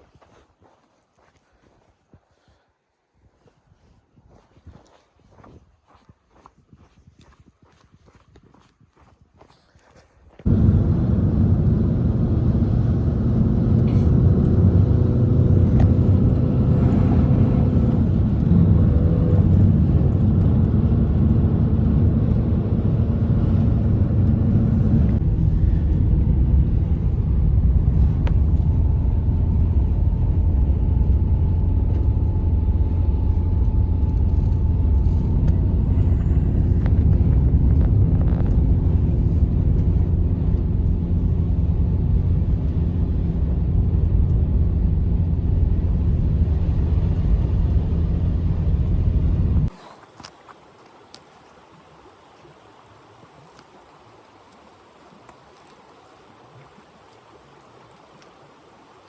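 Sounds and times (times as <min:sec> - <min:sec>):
loud low rumble: 0:10.5 - 0:49.7
faint humming tones: 0:10.5 - 0:59.0.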